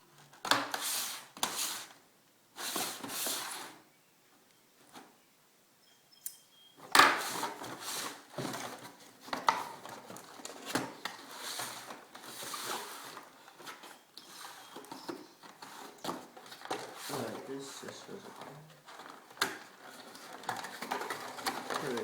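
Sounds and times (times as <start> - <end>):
packaging rustling and clicking: 7.0 - 22.0.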